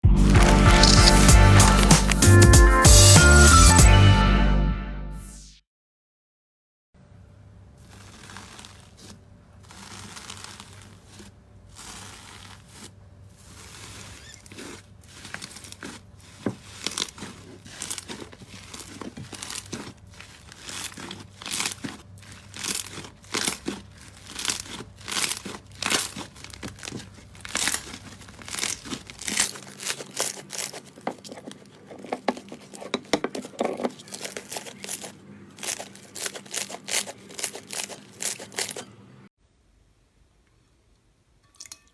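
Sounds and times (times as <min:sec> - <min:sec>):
slime squished with sticky crackles: 0:07.8 - 0:38.8.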